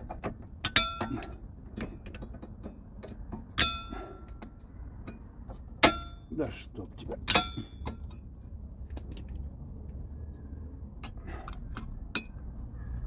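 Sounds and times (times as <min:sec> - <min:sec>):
clicks and knocks of parts handled: 0:00.0 - 0:06.2, 0:07.1 - 0:10.0, 0:11.0 - 0:12.4
metal brake parts clanging: 0:00.0 - 0:06.3, 0:07.1 - 0:08.2.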